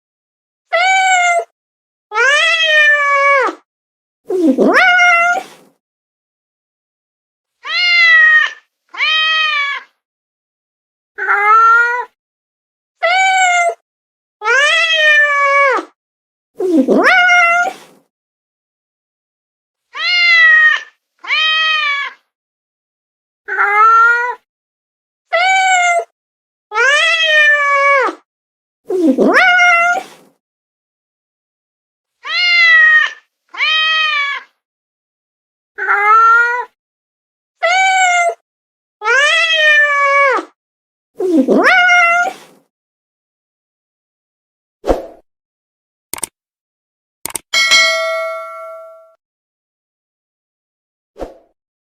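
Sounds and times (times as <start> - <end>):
cat meowing: 7.6 - 9.9, 20.0 - 22.2, 32.2 - 34.5, 41.6 - 42.4.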